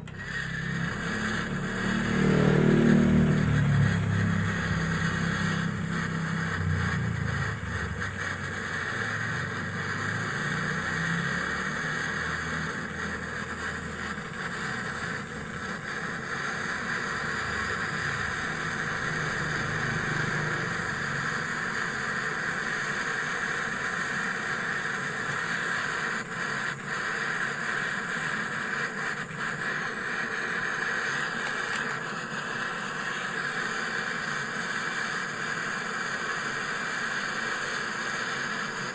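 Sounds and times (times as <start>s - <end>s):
low hum: 0.0s - 21.8s
small motor hissing: 0.0s - 38.9s.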